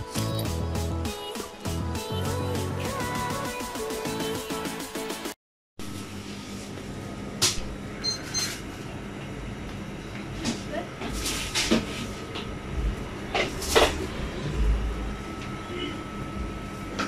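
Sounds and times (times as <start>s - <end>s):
steady low hum: 8.7s - 17.0s.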